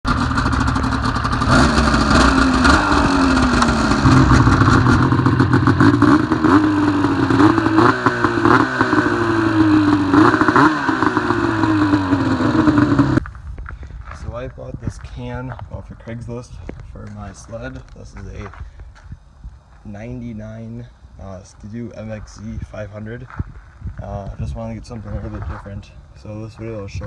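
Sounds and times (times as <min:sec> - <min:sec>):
snowmobile engine revving: 0:00.1 - 0:13.2.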